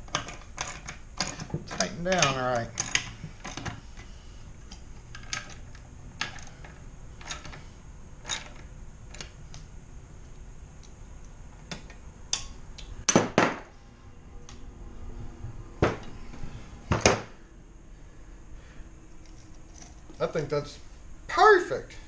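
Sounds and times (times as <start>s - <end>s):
metallic clicks and clinks: 0.1s - 3.8s
loud knocks: 13.1s - 13.7s, 16.9s - 17.4s.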